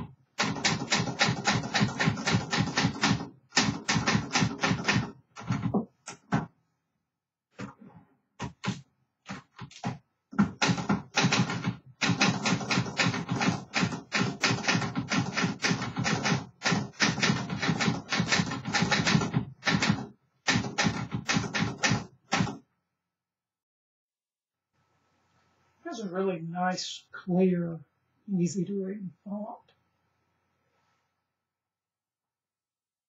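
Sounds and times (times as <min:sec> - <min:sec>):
manual typewriter keystrokes: 0:00.0 - 0:06.5, 0:08.4 - 0:22.6.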